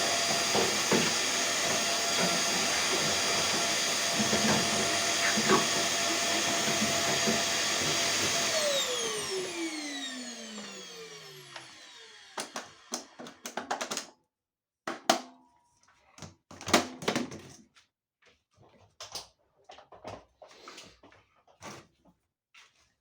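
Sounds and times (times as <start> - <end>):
electric motor winding down: 0.0 - 13.5.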